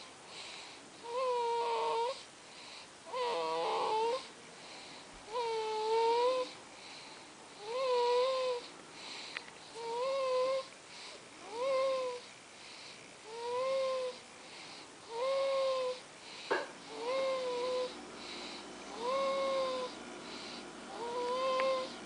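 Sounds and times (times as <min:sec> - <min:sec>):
whistly snoring: 0:03.1 - 0:04.3, 0:13.3 - 0:14.2, 0:20.9 - 0:22.0.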